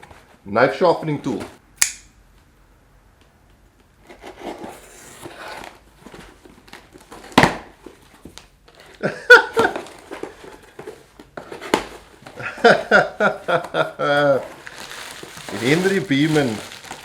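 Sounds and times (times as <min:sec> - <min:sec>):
sharp clicks: 0:01.8 - 0:02.1
packaging rustling: 0:13.5 - 0:17.0.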